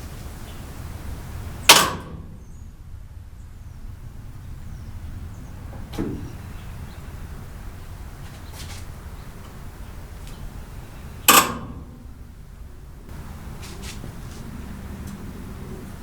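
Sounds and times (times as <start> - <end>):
sharp metallic bang: 1.7 - 2.6, 11.2 - 12.3.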